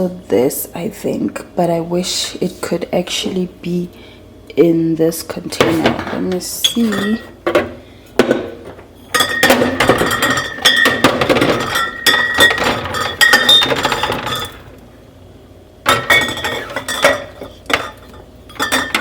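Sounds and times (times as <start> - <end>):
glass bottles clinking: 6.6 - 8.5, 9.1 - 14.7, 15.9 - 19.0.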